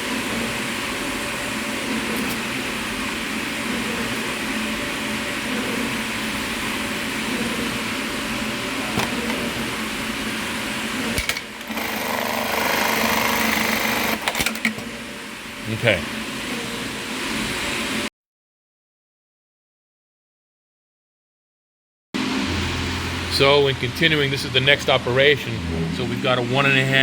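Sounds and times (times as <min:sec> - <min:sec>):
industrial sewing machine running: 0:11.1 - 0:14.7.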